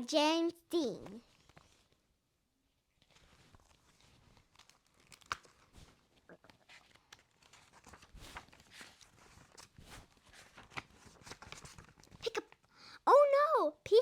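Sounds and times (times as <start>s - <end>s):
paper rustling and crinkling: 1.2s - 2.0s, 2.9s - 12.7s.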